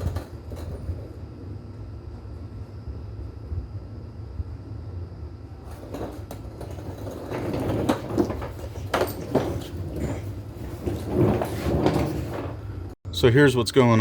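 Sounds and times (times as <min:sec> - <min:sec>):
steady low rumble: 0:00.0 - 0:07.3.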